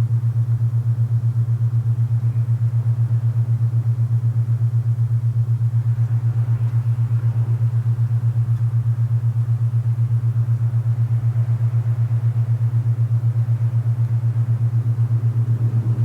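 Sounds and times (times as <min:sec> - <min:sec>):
pulsing low hum: 0:00.0 - 0:16.0
soft wind hiss: 0:10.3 - 0:16.0.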